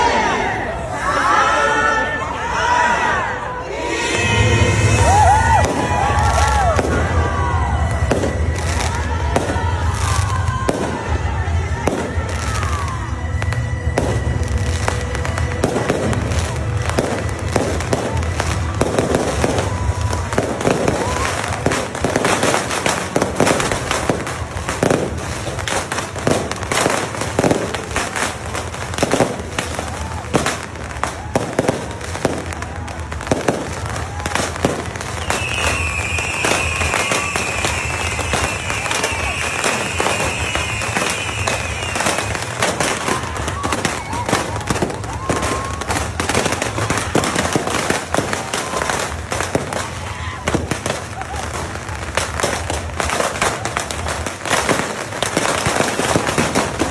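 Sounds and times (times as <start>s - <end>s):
fireworks bangs and crackles: 3.2s - 56.9s
whistling rockets: 3.7s - 56.9s.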